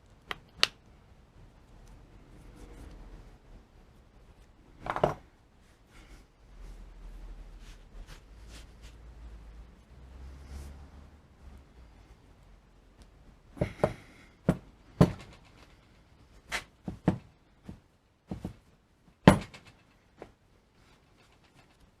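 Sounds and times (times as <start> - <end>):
sharp knocks and clicks: 13.6 - 15.8, 16.9 - 20.3.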